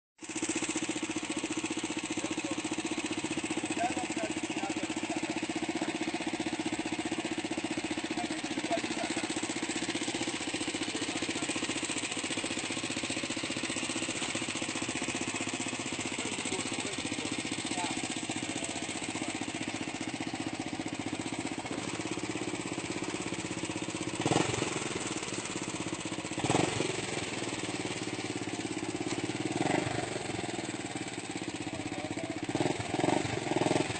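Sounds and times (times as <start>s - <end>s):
helicopter running: 3.7s - 28.6s.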